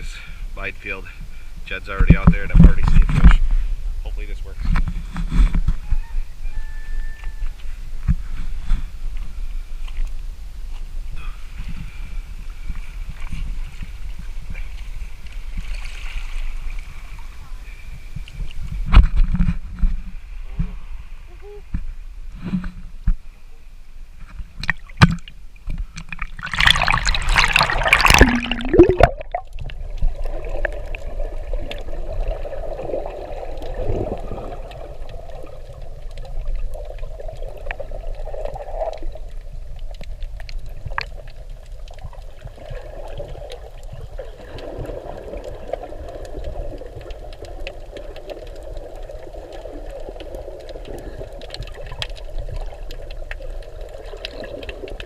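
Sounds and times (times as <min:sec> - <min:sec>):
water splashing and bubbling: 0:11.0 - 0:20.7, 0:24.2 - 0:55.0.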